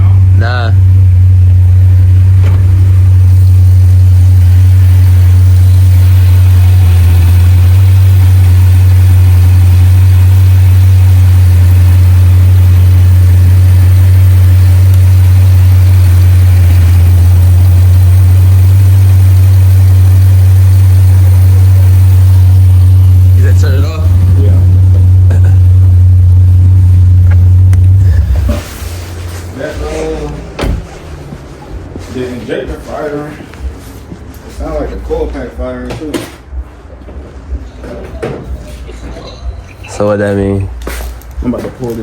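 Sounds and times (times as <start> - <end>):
car engine idling: 0.0 - 33.7.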